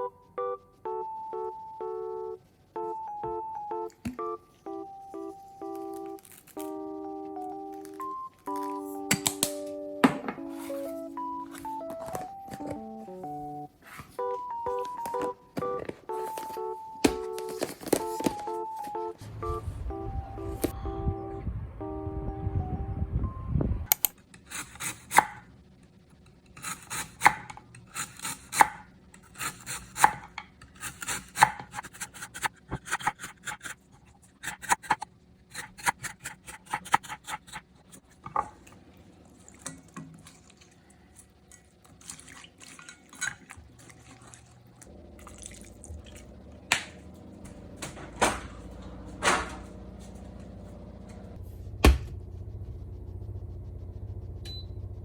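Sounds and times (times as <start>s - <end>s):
low steady hum: 0.0s - 55.0s
knife chopping on cutting board: 26.6s - 33.8s, 34.4s - 37.6s.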